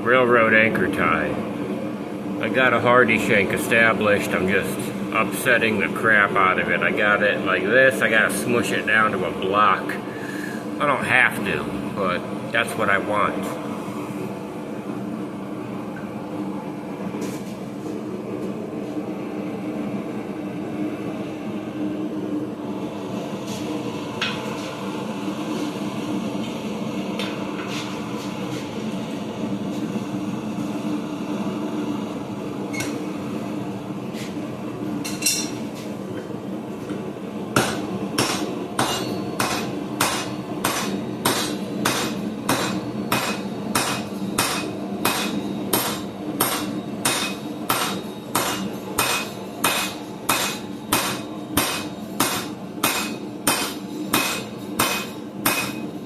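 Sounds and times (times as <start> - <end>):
hammer striking metal on anvil: 37.6 - 55.8.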